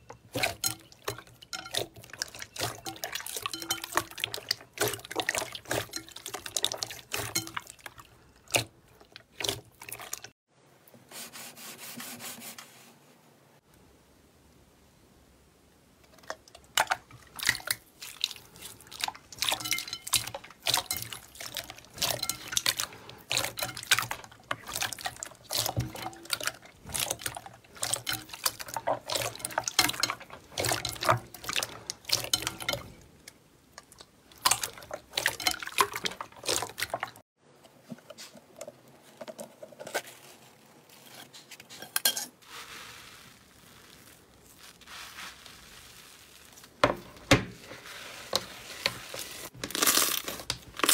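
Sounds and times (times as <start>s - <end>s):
soft squelching: 0.0s - 10.3s, 16.2s - 37.2s.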